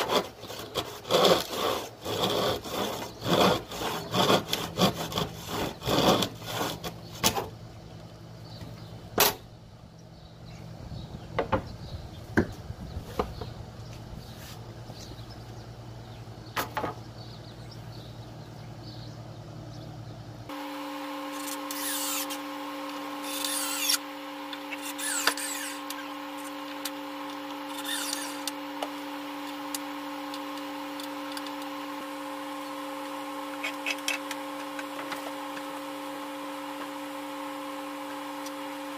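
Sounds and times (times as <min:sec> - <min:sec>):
scraping bursts: 0:00.0 - 0:07.6, 0:21.3 - 0:22.5, 0:23.2 - 0:28.6
steady machine hum: 0:01.2 - 0:38.9.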